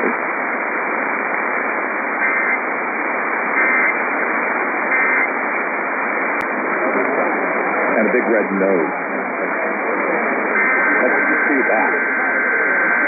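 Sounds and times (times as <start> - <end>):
radio static hiss: 0.0 - 13.0
warbling digital data tones: 3.6 - 4.0, 4.9 - 5.4, 10.5 - 13.0.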